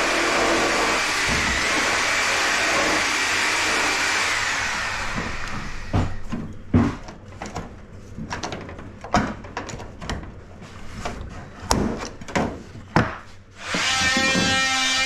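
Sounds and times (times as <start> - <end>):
knocks and clunks: 5.1 - 10.4.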